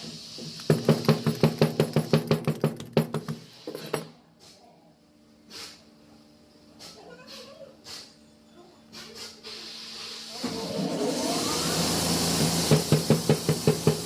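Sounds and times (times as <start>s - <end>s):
rapid sharp knocking: 0.6s - 3.4s.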